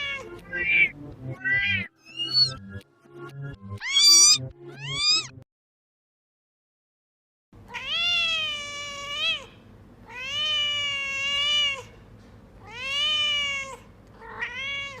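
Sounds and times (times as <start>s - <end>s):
cat meowing: 0.0s - 2.6s, 3.8s - 5.3s, 7.7s - 11.9s, 12.6s - 15.0s.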